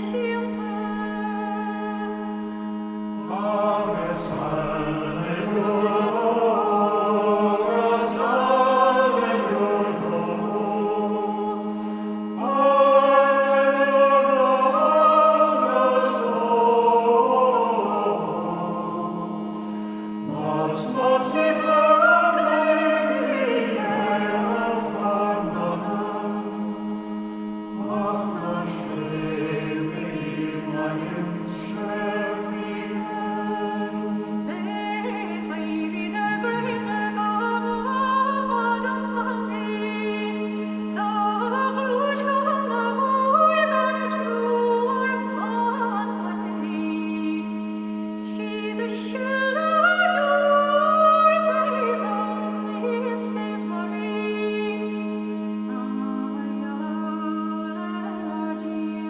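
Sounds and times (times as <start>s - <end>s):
held drone: 0.0s - 59.0s
voices singing: 3.2s - 11.7s, 12.3s - 19.6s, 20.2s - 26.8s, 27.7s - 40.2s.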